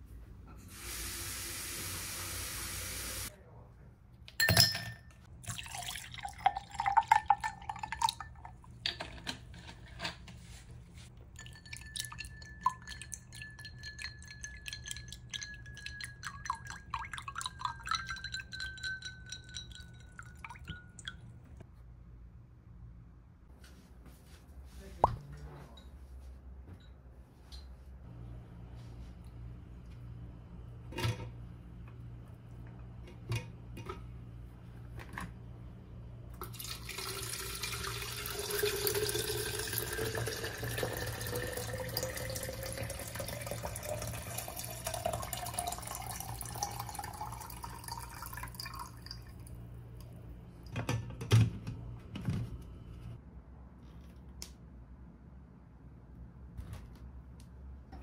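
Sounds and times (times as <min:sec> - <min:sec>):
tap water filling container: 0:36.4 - 0:49.2.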